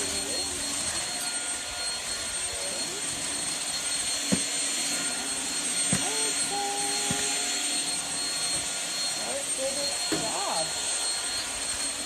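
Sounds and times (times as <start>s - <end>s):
stick vacuum whining: 0.0s - 12.0s.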